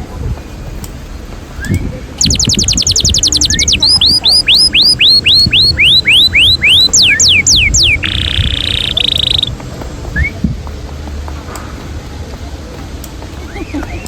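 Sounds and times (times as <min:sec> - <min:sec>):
bird singing: 0:01.6 - 0:09.6.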